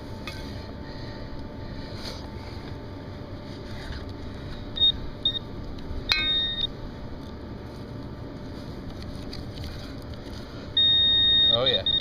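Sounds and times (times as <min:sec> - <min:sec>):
metal detector beeping: 0:04.8 - 0:05.4, 0:06.1 - 0:06.7, 0:10.8 - 0:12.0.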